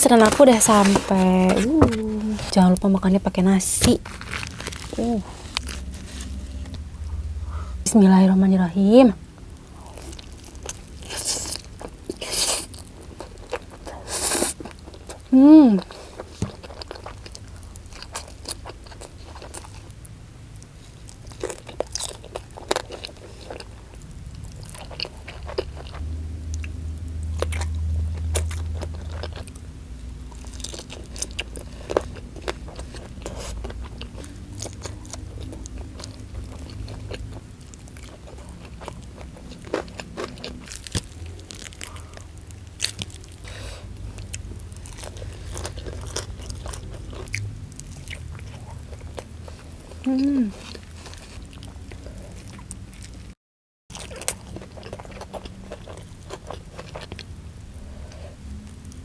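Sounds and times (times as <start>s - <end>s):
steady low hum: 0.0s - 59.0s
crunchy bites and chewing: 3.8s - 6.8s, 20.6s - 53.3s, 53.9s - 59.0s.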